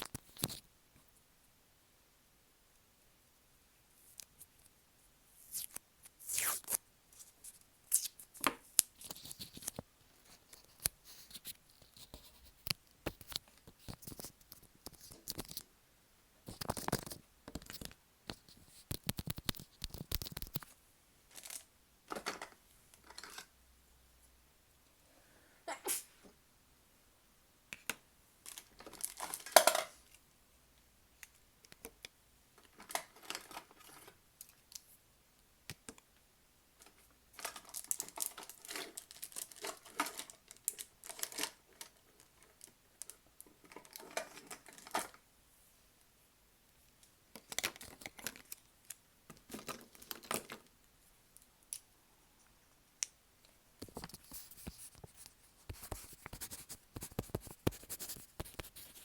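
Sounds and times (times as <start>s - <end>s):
paper rustling and crinkling: 37.4s - 42.6s, 53.8s - 59.0s.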